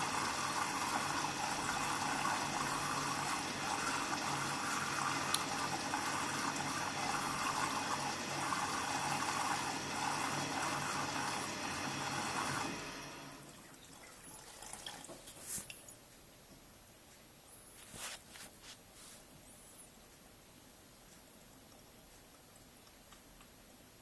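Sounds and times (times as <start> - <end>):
water rushing into washing machine: 0.0 - 15.5.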